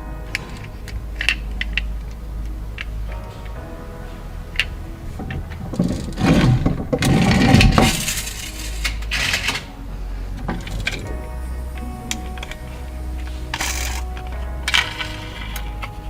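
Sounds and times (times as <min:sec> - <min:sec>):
toy cars clattering scrape: 0:05.3 - 0:09.8, 0:12.1 - 0:16.0
toy cars clicking and rattling: 0:05.8 - 0:09.7, 0:13.5 - 0:16.0.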